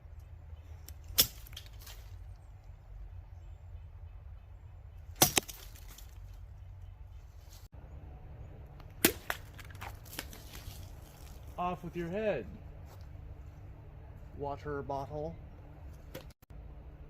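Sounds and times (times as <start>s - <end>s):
steady low rumble: 0.0s - 17.0s
machete chops: 1.1s - 2.0s, 5.2s - 6.0s, 9.0s - 10.8s.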